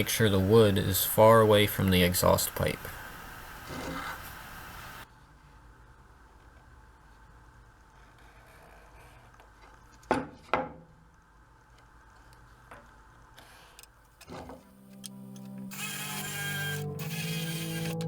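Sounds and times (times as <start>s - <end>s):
faint room hum: 0.0s - 18.0s
background music: 14.7s - 18.0s.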